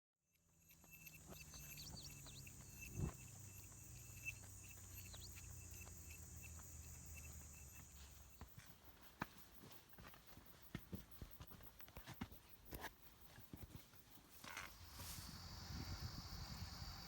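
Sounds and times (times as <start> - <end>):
insects buzzing: 0.4 - 10.4, 12.6 - 17.0.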